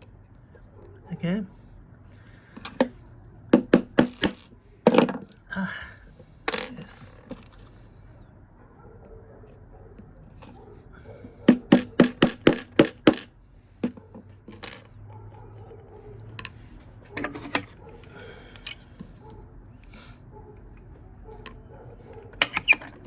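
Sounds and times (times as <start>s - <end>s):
metal tool tapping metal pin: 3.6s - 4.5s.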